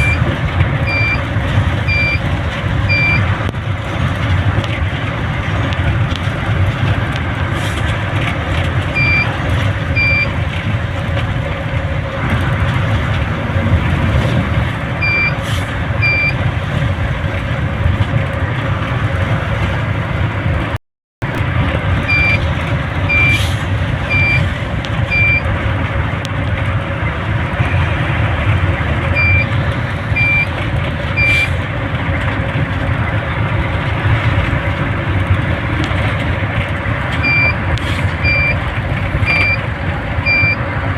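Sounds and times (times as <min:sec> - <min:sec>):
vehicle engine and road noise: 0:00.0 - 0:40.9
short high beeps: 0:16.0 - 0:16.3, 0:22.1 - 0:22.4, 0:23.1 - 0:23.4, 0:39.3 - 0:39.6.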